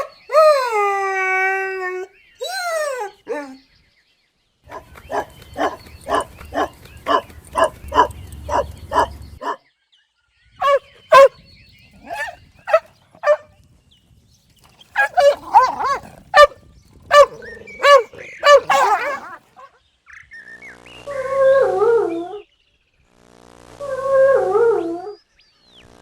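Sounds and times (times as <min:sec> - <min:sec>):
puppy yipping: 0:10.6 - 0:11.3.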